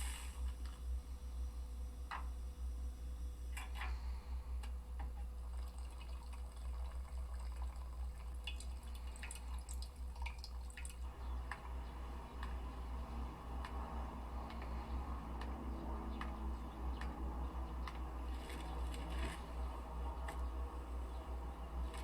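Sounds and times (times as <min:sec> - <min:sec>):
low hum: 0:00.0 - 0:22.0
small clicks and drip-like taps: 0:04.6 - 0:20.8.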